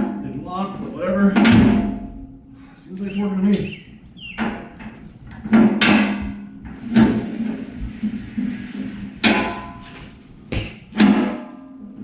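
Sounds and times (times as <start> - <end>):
sharp metal clanks: 2.9 - 3.8.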